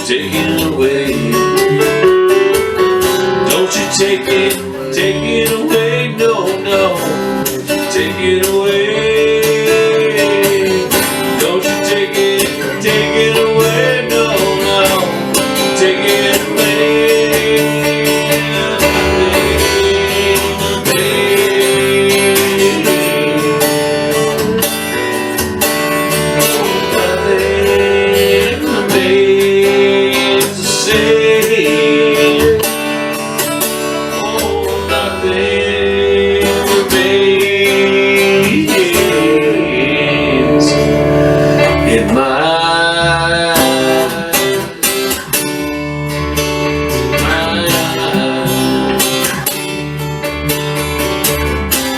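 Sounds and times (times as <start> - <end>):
acoustic guitar strumming: 0.0 - 51.9
gliding melody line: 18.4 - 22.3, 39.9 - 42.4.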